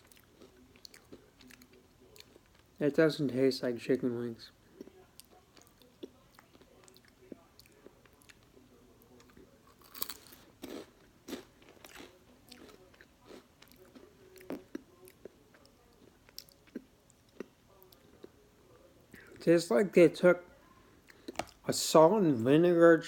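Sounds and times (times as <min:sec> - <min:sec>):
chewing crunchy potato chip: 0:00.0 - 0:02.7, 0:04.8 - 0:18.3.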